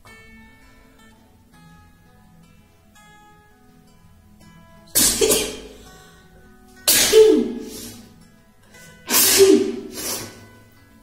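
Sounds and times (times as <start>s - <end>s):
soft acoustic guitar music: 0.0s - 11.0s
woman sneezing: 5.0s - 5.9s, 6.9s - 8.1s, 9.1s - 10.4s.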